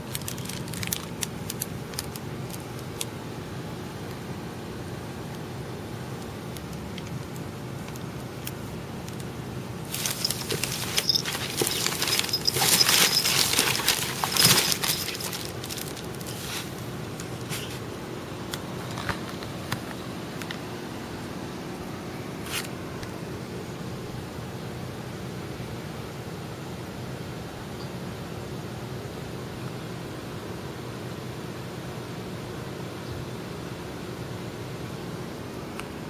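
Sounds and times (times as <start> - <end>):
rustling and crackling: 0.0 - 3.1, 6.6 - 20.6.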